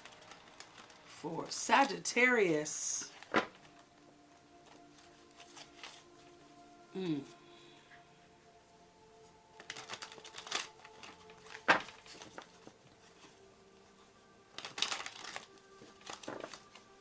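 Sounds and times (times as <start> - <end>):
cards shuffling and flicking: 3.2 - 3.8, 10.1 - 12.6, 14.6 - 16.9.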